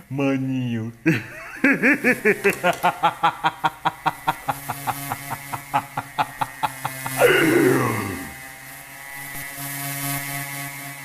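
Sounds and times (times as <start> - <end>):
cartoon character laughing: 1.1 - 8.3.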